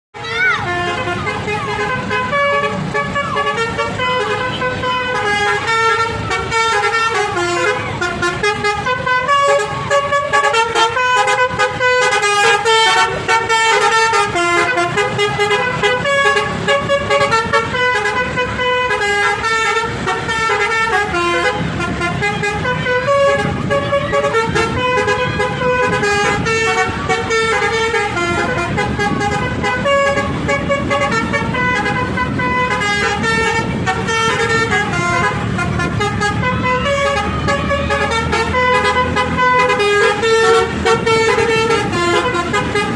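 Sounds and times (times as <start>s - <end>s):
bus horn melody: 0.2s - 42.9s
low vehicle rumble: 0.2s - 42.9s.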